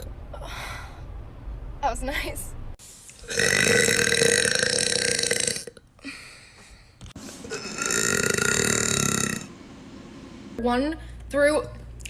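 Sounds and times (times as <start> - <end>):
girl burping: 3.3 - 6.2, 7.5 - 9.4.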